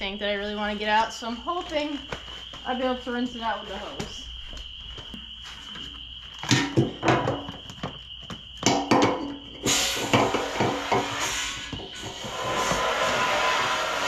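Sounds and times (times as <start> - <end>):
knocks and clunks of handling: 5.0 - 9.5
water rushing from hose into tank: 9.6 - 14.0.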